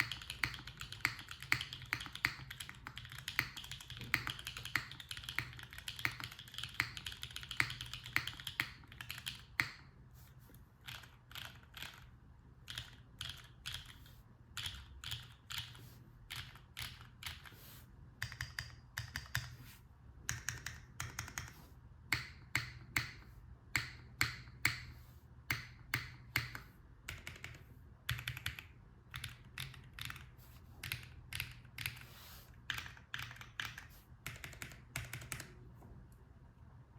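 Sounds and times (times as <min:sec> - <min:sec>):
mechanical keyboard typing: 0:00.0 - 0:09.9, 0:10.8 - 0:17.6, 0:18.2 - 0:19.6, 0:20.3 - 0:23.2, 0:25.5 - 0:35.6.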